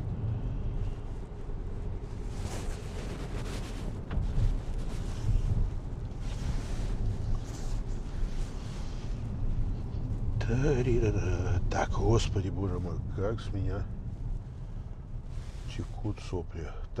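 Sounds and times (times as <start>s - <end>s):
low rumble in car cabin: 0.0s - 17.0s.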